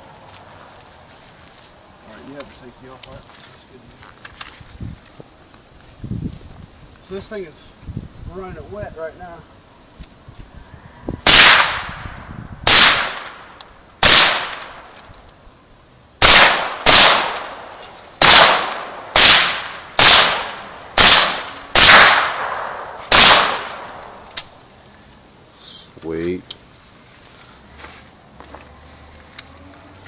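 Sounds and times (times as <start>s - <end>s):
suppressed rifle shots: 11.3s - 12.0s, 12.7s - 13.4s, 14.0s - 14.8s, 16.2s - 24.6s.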